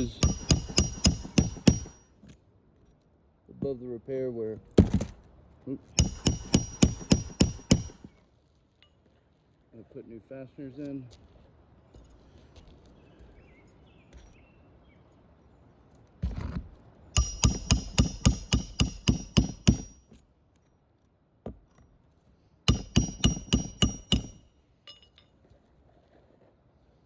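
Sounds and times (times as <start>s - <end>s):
hammer striking nails: 0.0s - 2.0s, 6.0s - 8.1s, 17.2s - 20.0s, 22.7s - 25.0s.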